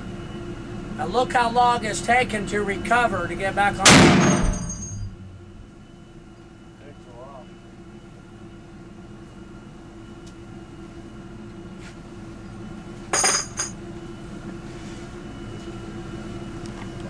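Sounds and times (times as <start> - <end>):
steady hum: 0.0 - 17.0
metallic clink with ringing: 4.2 - 5.2, 13.2 - 13.8.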